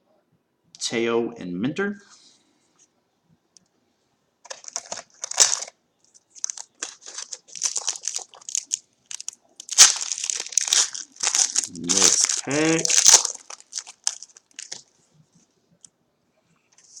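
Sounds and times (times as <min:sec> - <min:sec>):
card pack wrapper crinkling: 0:04.4 - 0:14.9.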